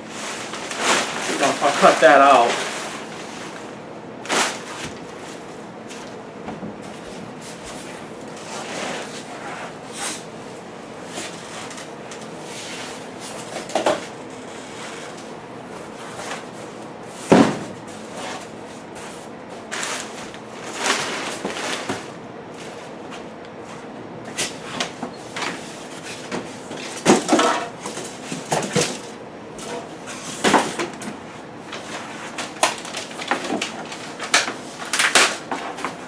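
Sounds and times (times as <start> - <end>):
cardboard packing handled: 0.1 - 6.2.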